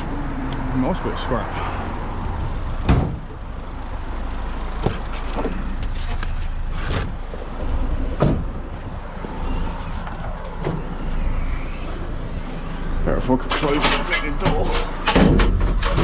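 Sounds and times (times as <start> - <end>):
steady low rumble: 0.0 - 16.0
scrap metal knocks and clanks: 13.5 - 16.0.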